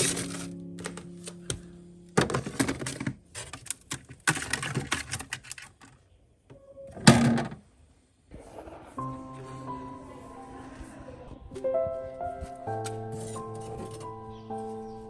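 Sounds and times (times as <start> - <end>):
clattering and clicking: 2.2 - 6.1.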